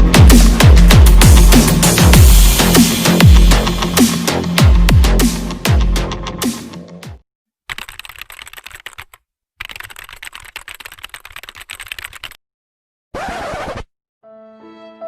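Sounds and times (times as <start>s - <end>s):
keyboard typing: 7.7s - 12.4s.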